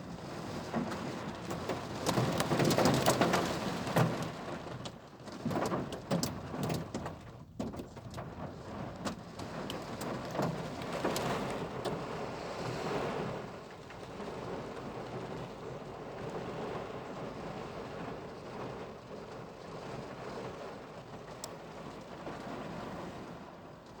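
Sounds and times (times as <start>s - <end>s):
raindrops tapping nearby: 0.4s - 12.4s
heavy rain pouring: 9.4s - 24.0s.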